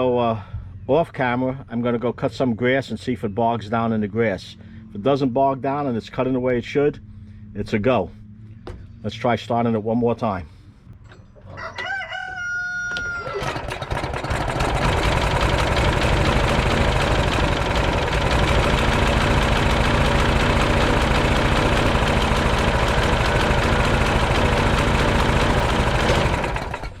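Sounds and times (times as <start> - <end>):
lawn mower engine running: 12.9 - 27.0
recoil starter pull: 12.9 - 27.0.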